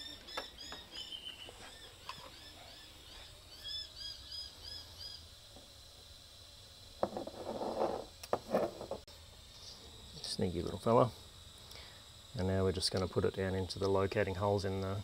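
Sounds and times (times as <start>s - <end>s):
small birds chirping: 0.0s - 5.3s.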